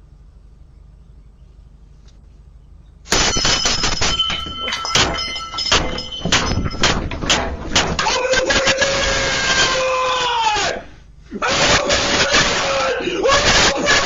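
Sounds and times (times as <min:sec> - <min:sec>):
ringing rattle: 0:03.1 - 0:08.8
door being struck hard: 0:04.3 - 0:08.2.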